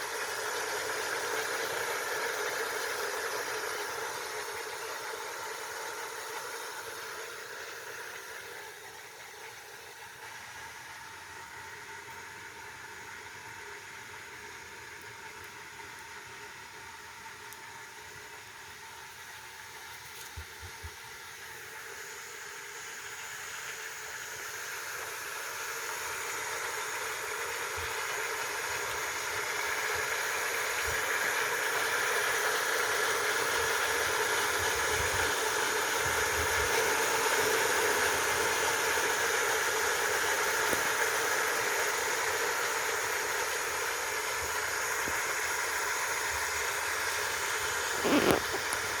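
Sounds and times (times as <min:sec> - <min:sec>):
food sizzling on a stove: 0:21.8 - 0:49.0.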